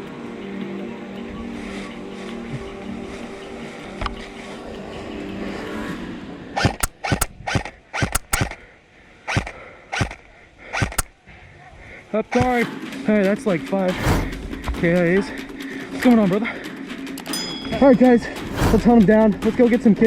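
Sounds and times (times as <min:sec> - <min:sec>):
airsoft rifle shots: 0:06.6 - 0:08.6, 0:10.8 - 0:11.1.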